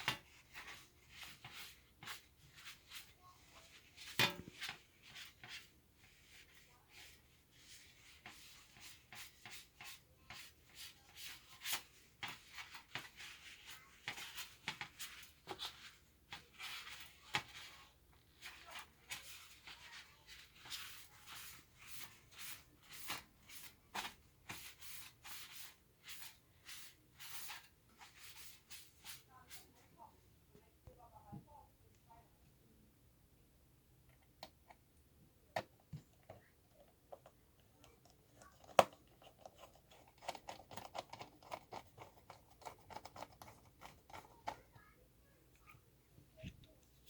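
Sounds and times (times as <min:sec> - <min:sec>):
hands rubbing and brushing laptop: 0:00.0 - 0:30.1.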